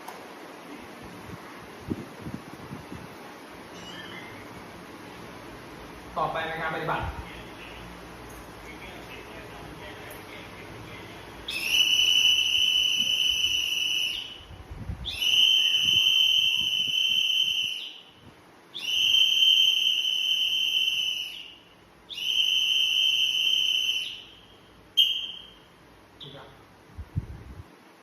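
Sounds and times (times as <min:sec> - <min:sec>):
whistle blasts: 0:11.5 - 0:26.4.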